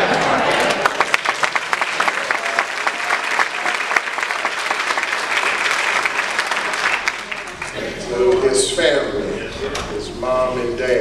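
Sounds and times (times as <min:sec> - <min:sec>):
congregation applauding: 0:00.0 - 0:09.9.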